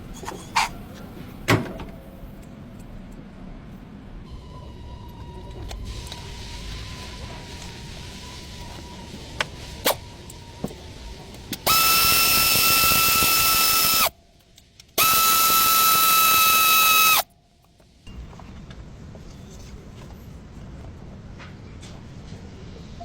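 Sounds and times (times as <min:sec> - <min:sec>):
power tool whining: 0:11.7 - 0:14.1, 0:15.0 - 0:17.2.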